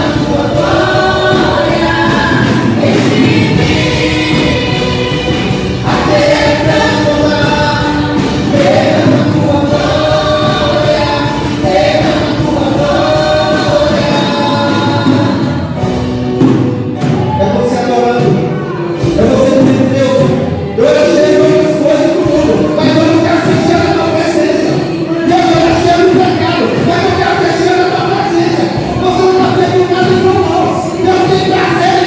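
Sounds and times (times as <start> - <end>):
choir singing: 0.0 - 16.2, 17.0 - 32.0
instrumental accompaniment: 0.0 - 32.0.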